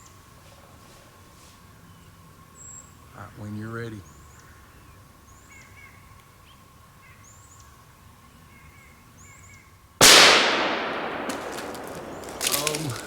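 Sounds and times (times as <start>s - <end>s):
faint bird chirps: 1.6s - 9.8s
rifle shot with echo: 10.0s - 13.0s.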